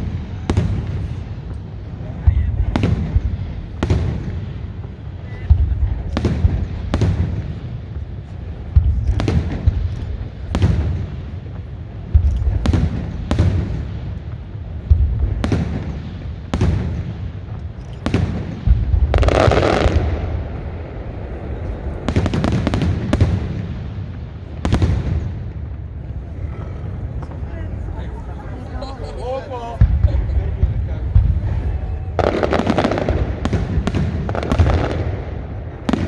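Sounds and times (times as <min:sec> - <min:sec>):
crackling firework burst: 0:00.0 - 0:36.0
firework shells bursting: 0:08.8 - 0:29.2.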